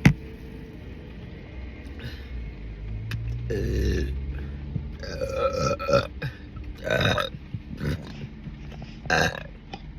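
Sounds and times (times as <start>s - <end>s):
woman burping loudly: 5.0s - 8.1s, 9.1s - 9.5s.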